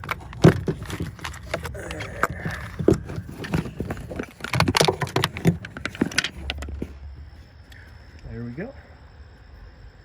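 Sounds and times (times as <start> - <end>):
hand tools clicking and knocking: 0.0 - 7.0.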